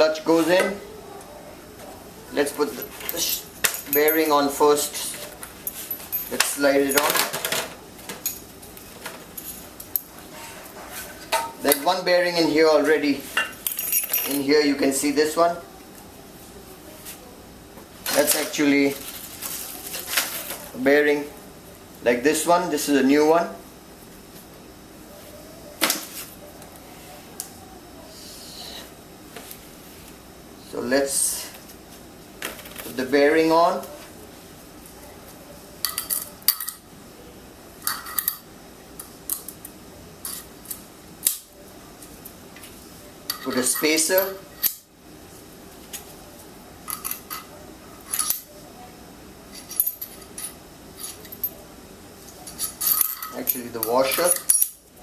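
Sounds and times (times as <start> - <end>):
metal engine parts clinking: 52.4 - 54.8.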